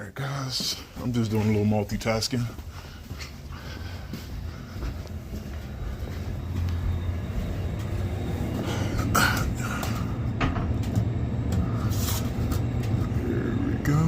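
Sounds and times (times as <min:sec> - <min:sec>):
motor humming: 0:03.6 - 0:14.0.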